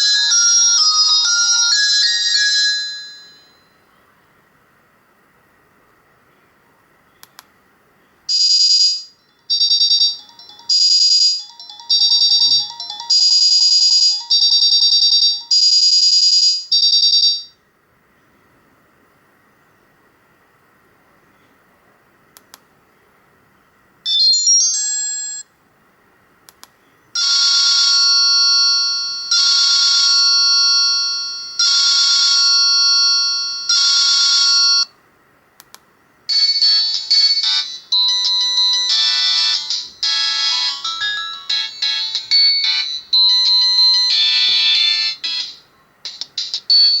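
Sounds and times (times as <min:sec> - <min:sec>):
phone ring pattern: 0:00.0 - 0:03.8, 0:08.3 - 0:17.6, 0:24.1 - 0:25.5, 0:27.2 - 0:34.9, 0:36.3 - 0:47.0
short high ringtone melody: 0:00.0 - 0:03.8, 0:09.5 - 0:17.5, 0:36.3 - 0:45.6
faint clicks: 0:07.2 - 0:07.5, 0:22.4 - 0:22.7, 0:26.5 - 0:26.8, 0:35.6 - 0:35.9.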